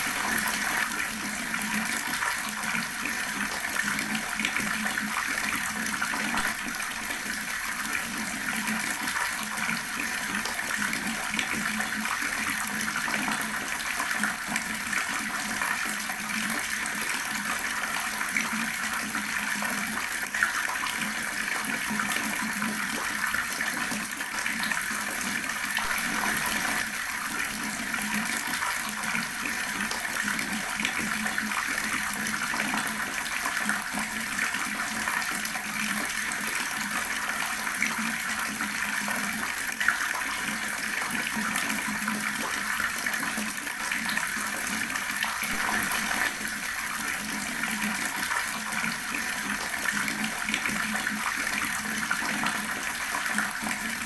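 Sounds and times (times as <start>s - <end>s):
water tap running: 0.0s - 4.8s, 25.2s - 30.8s, 44.7s - 51.2s.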